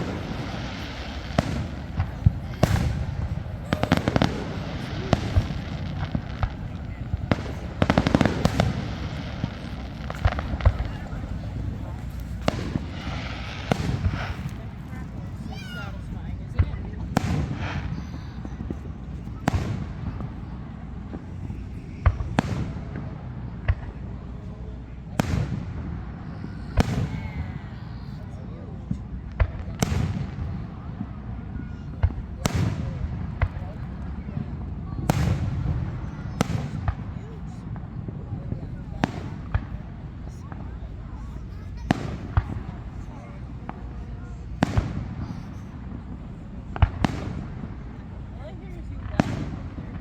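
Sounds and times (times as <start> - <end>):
crackling pops: 0.0 - 15.0
fireworks bangs: 0.0 - 50.0.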